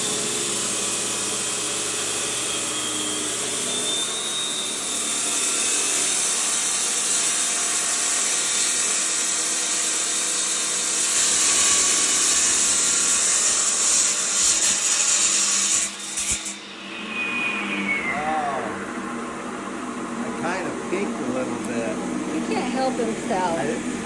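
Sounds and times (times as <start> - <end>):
power tool grinding stone: 0.0 - 17.2.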